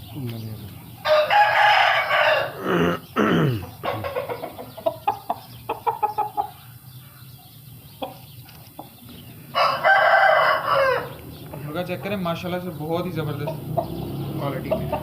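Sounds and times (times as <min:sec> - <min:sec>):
rooster crowing: 0:01.0 - 0:04.4, 0:09.5 - 0:11.2
chicken clucks: 0:03.6 - 0:12.2, 0:13.3 - 0:15.0.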